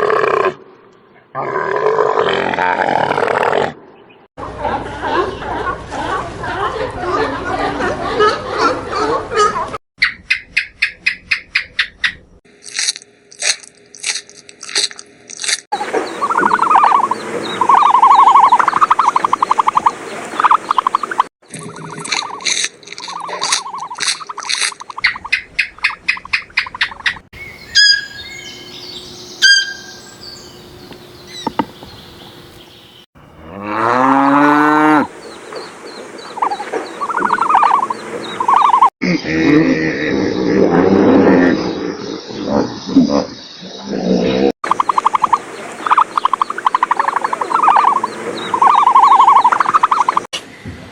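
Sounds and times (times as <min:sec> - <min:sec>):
farm animals calling: 0:15.8 - 0:39.4, 0:41.2 - 0:50.3
cattle mooing: 0:33.4 - 0:35.1.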